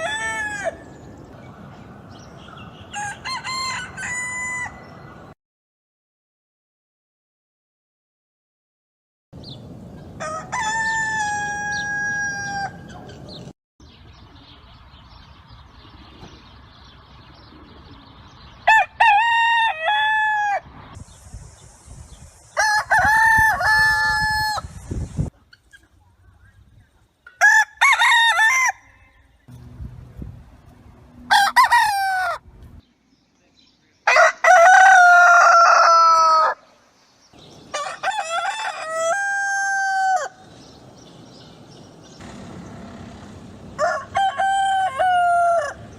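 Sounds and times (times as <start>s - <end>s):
roosters crowing: 0.0s - 1.2s, 2.5s - 5.4s, 10.0s - 13.2s, 18.6s - 20.8s, 22.5s - 24.8s, 27.3s - 29.4s, 31.1s - 32.5s, 34.0s - 36.8s, 37.4s - 41.2s, 41.8s - 45.9s.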